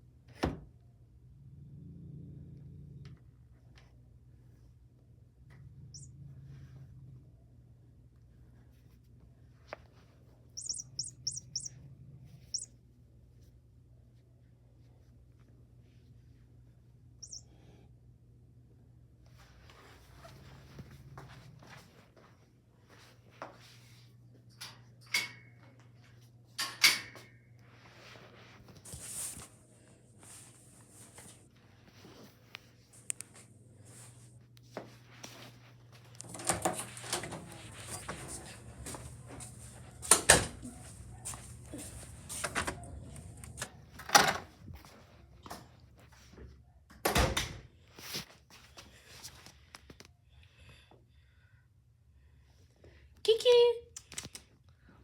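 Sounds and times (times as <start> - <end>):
steady low hum: 28.4 - 45.6.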